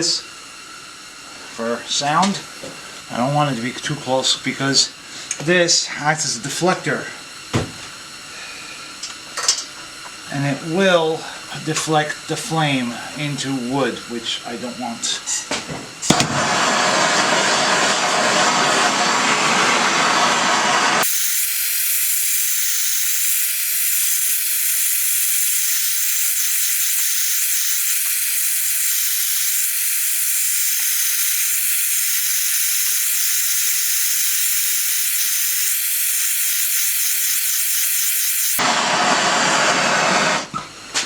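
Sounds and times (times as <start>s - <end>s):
torch flame hissing: 16.0s - 40.5s.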